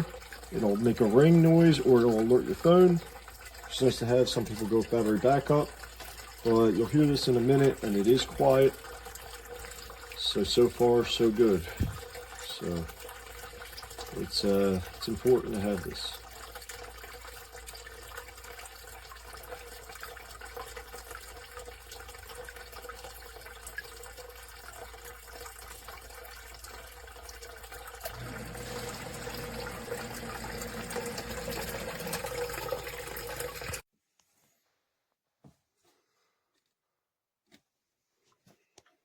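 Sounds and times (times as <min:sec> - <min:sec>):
submersible pump running: 0:28.0 - 0:33.8
water rushing: 0:28.1 - 0:33.8.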